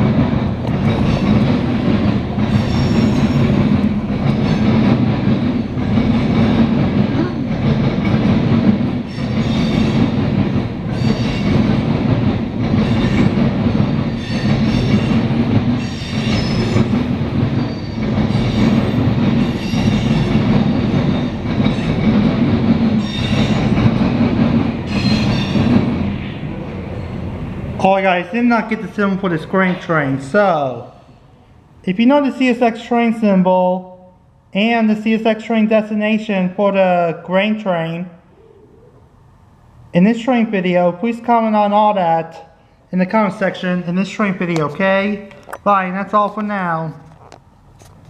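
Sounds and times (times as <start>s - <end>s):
wheel clatter over rail joints: 0.0s - 26.4s
freight train rumbling past: 0.0s - 33.1s
high-pitched wheel squeal: 2.6s - 3.6s, 17.6s - 18.7s.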